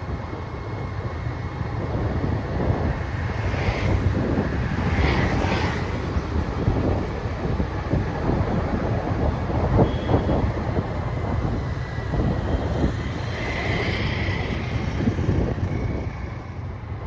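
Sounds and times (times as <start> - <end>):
wind buffeting microphone: 0.0 - 17.0.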